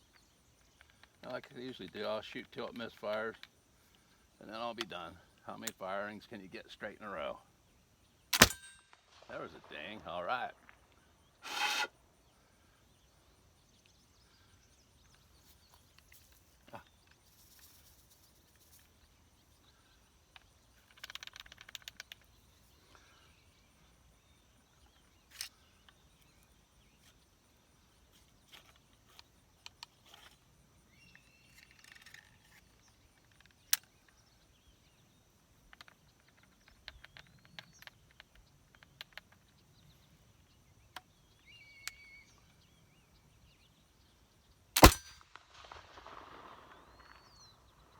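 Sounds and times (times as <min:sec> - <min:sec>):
outdoor ambience: 0:00.0 - 0:47.9
faint bird chirps: 0:12.0 - 0:44.7, 0:46.4 - 0:47.9
pistol handling clicks and knocks: 0:20.3 - 0:22.3, 0:31.1 - 0:34.2.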